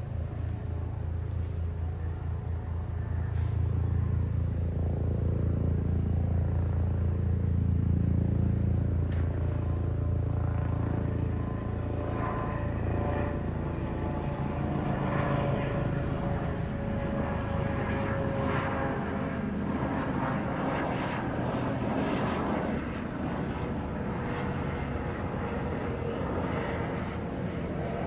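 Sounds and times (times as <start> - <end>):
helicopter rotor and engine: 0.0 - 28.0.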